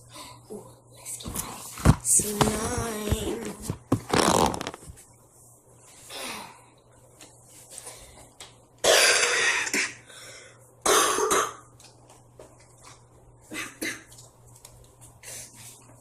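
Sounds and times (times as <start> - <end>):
person coughing: 8.8 - 10.1, 10.8 - 11.7, 13.5 - 14.1.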